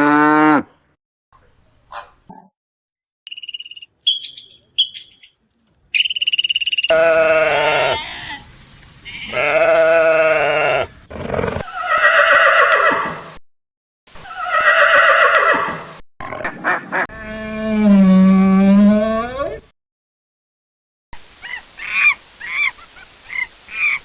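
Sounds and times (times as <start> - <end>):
farm animals calling: 6.0 - 11.2
short animal sounds: 6.9 - 11.8.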